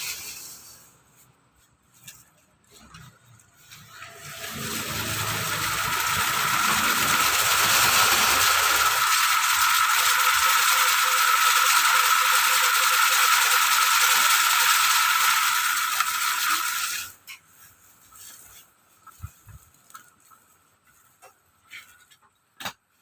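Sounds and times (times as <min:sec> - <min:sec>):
winding machine whirring: 0:03.7 - 0:17.2.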